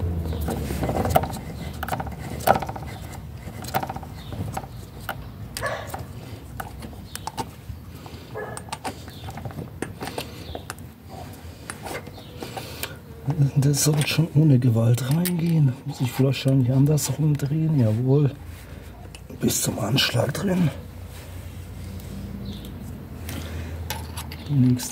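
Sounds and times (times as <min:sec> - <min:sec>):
metal parts clicking and scraping: 0:00.3 - 0:07.6, 0:08.4 - 0:13.0, 0:13.7 - 0:17.4, 0:23.3 - 0:24.9.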